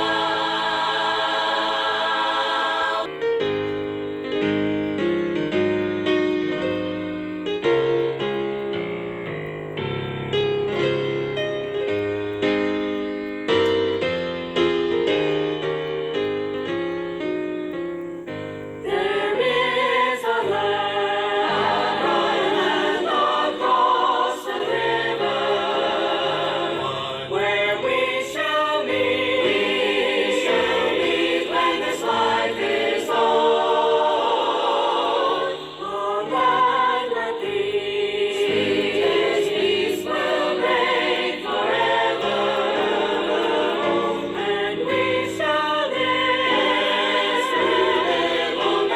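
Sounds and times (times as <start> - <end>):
choir singing: 0.0 - 3.9, 18.8 - 48.9
piano playing gospel song: 0.0 - 48.9.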